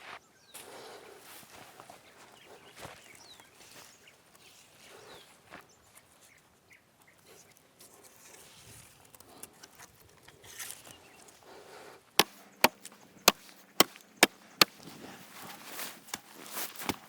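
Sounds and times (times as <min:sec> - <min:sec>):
blade chopping wood: 0:12.2 - 0:15.0, 0:16.1 - 0:17.0.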